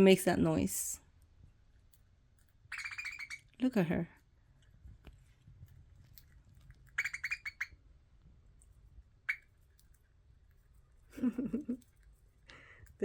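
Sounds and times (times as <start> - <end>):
budgie squawking: 2.7 - 3.5, 6.9 - 7.8.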